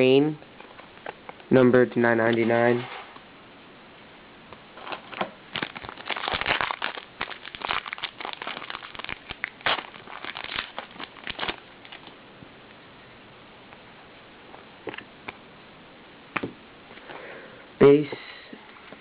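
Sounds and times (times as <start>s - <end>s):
wrapper crinkling and tearing: 4.8s - 12.1s.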